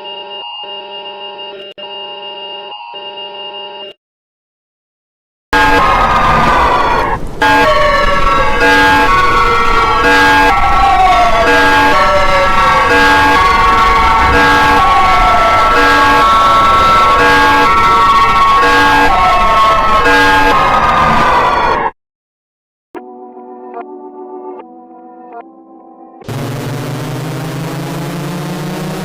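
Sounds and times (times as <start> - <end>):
reversed siren-like tone gliding down: 5.6 - 21.9, 26.3 - 29.0
steady tones switching on and off: 26.3 - 29.0.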